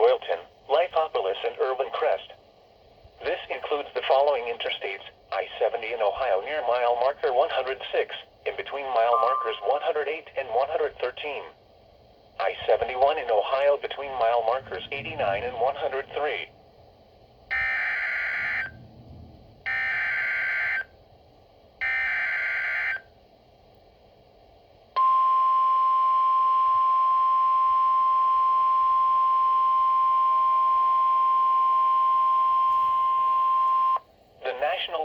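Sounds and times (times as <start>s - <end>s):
steady warning alarm tone: 9.2s - 9.7s, 17.4s - 21.0s, 21.8s - 23.1s, 25.0s - 34.0s
warbling digital data tones: 9.2s - 9.7s.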